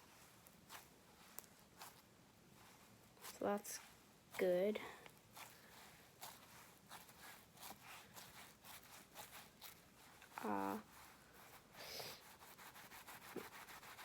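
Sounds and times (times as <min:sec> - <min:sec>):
slime being kneaded: 0:00.6 - 0:14.0.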